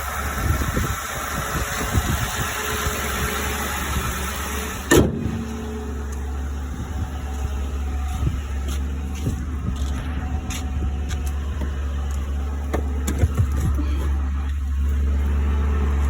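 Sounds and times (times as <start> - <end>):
engine idling: 0.0 - 16.0
exhaust puffing: 0.0 - 16.0
sharp bump: 4.9 - 5.7.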